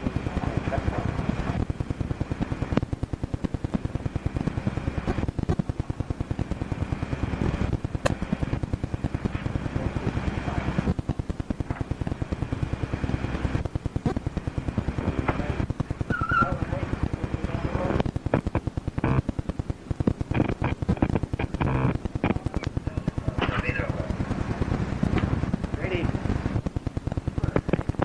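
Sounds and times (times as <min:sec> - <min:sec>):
rapid mechanical clattering: 0:00.0 - 0:28.0.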